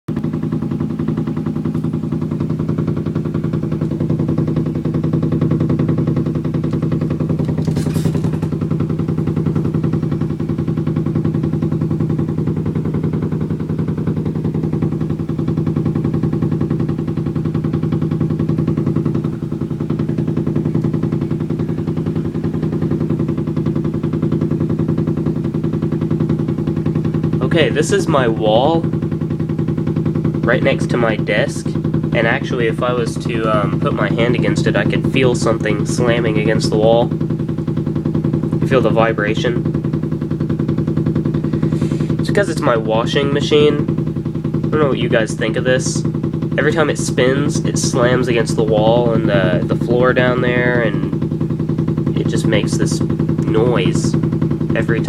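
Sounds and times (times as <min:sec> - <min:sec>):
washing machine spinning: 0:00.1 - 0:33.1.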